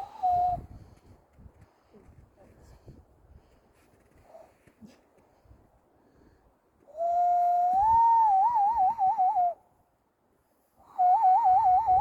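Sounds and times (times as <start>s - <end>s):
warbling hand whistle: 7.0s - 9.6s, 11.0s - 12.0s.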